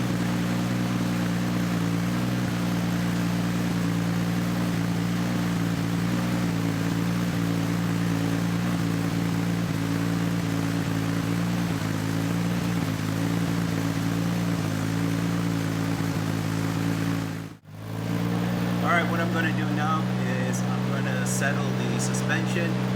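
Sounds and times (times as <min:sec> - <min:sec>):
car engine idling: 0:00.0 - 0:22.9.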